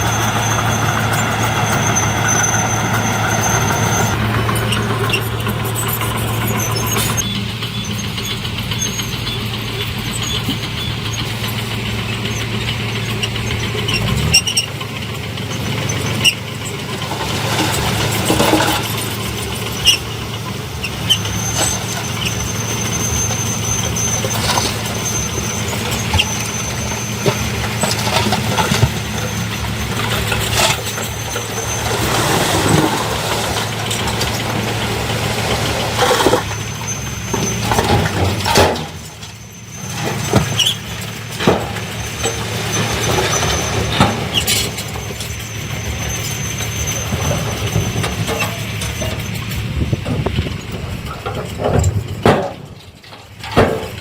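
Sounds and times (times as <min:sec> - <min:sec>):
high-pitched squeal: 0:00.0 - 0:14.8, 0:15.4 - 0:53.1
diesel machinery running: 0:00.0 - 0:54.0.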